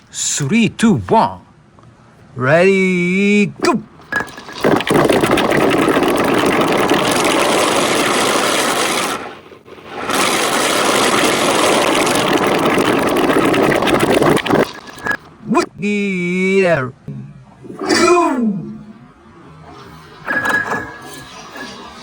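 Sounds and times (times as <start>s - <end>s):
marbles rattling down a track: 4.0s - 15.2s.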